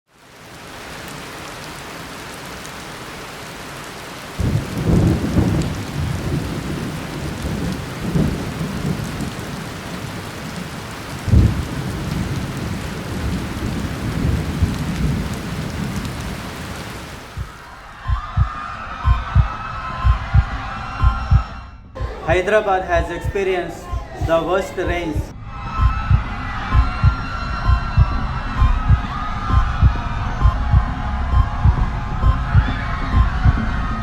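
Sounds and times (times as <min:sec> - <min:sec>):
steady rain falling: 0:00.1 - 0:17.9, 0:22.2 - 0:25.3
thunder rumbling: 0:04.3 - 0:18.5.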